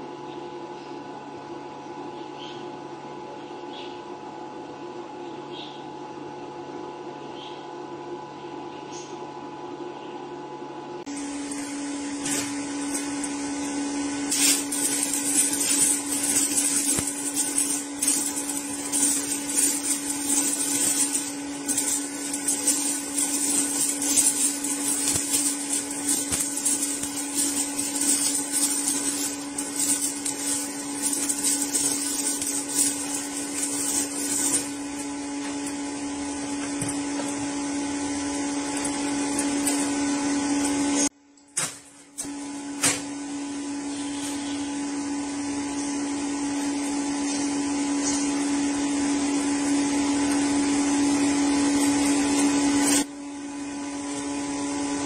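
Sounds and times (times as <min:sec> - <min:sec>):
steady hum: 0:11.0 - 0:41.2
welding arc crackling: 0:11.1 - 0:41.1, 0:46.5 - 0:53.1.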